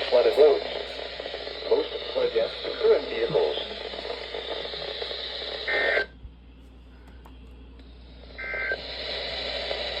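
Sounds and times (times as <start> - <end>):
digital data bursts: 0.0 - 6.1
radio static: 0.0 - 6.2, 8.2 - 10.0.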